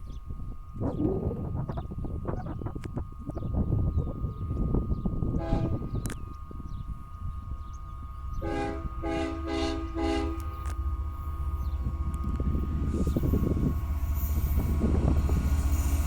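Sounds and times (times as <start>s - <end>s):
freight train rumble: 0.0s - 16.0s
locomotive air horn blasts: 5.3s - 6.0s, 8.4s - 10.7s.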